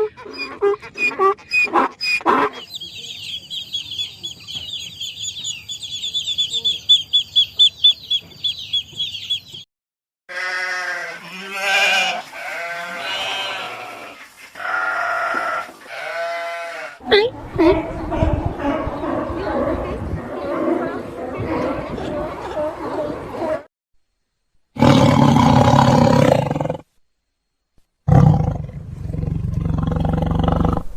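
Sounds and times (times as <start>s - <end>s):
high repeated chirping calls: 0.0s - 9.7s
goats bleating: 10.3s - 17.0s.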